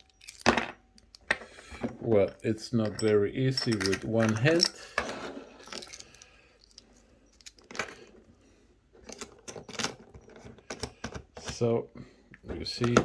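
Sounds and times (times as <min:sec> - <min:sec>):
small metal clicks and scrapes: 0:00.0 - 0:01.6, 0:03.0 - 0:08.2.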